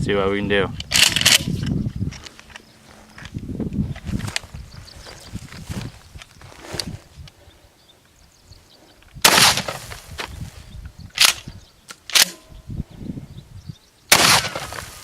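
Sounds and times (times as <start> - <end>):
shotgun pump clacks: 0.8 - 1.7
shotgun shots: 9.2 - 10.0, 14.1 - 15.0.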